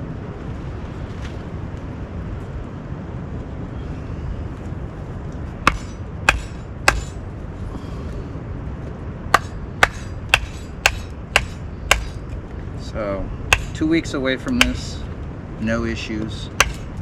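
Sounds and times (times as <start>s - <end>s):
wooden baton striking blade: 5.6s - 7.2s, 9.3s - 12.2s, 13.5s - 13.8s, 16.6s - 16.9s.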